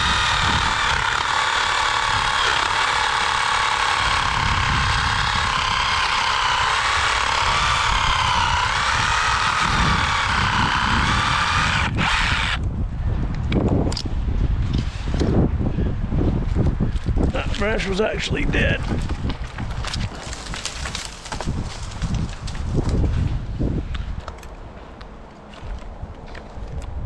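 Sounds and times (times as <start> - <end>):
reciprocating saw cutting branch: 0.0 - 12.6.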